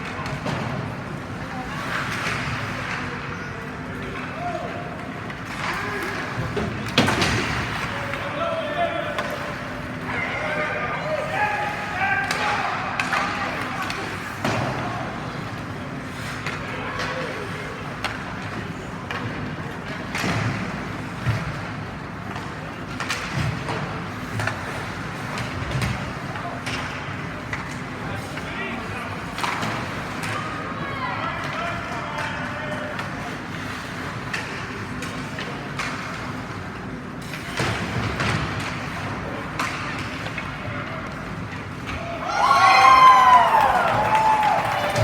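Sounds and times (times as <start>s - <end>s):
ice rink noise: 0.0s - 45.0s
low arena hum: 0.0s - 45.0s.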